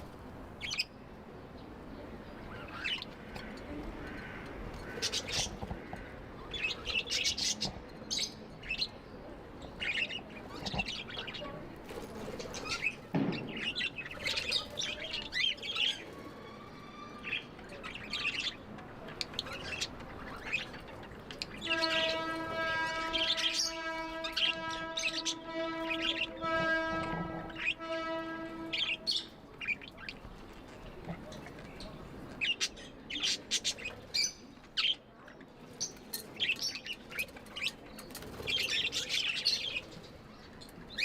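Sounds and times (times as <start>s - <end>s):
steady horn-like tone: 21.7s - 29.1s.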